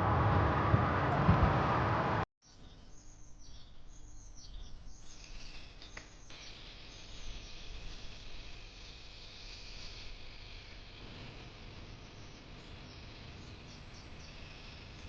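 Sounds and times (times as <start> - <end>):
loud rushing noise: 0.0 - 2.2
small birds chirping: 2.4 - 8.2, 11.8 - 15.0.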